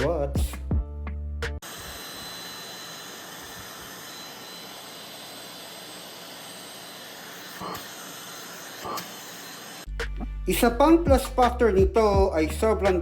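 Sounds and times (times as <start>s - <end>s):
vacuum cleaner running: 1.6s - 9.9s.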